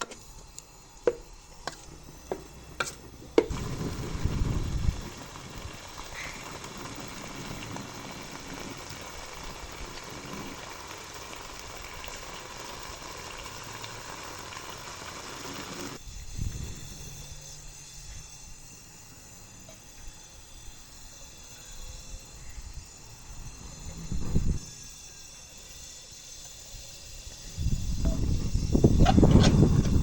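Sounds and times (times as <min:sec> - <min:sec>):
frying sizzle: 0:00.0 - 0:16.1.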